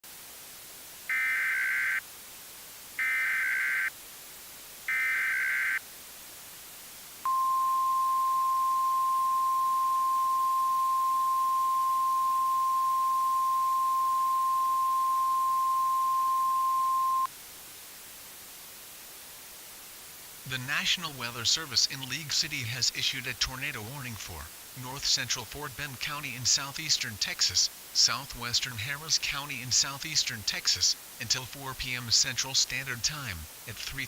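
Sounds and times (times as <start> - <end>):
piercing steady alert tone: 7.3 - 17.3.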